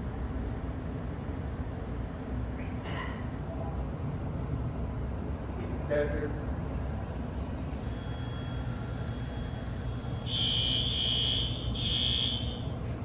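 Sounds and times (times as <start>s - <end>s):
fire alarm horn buzzing: 7.8s - 12.8s.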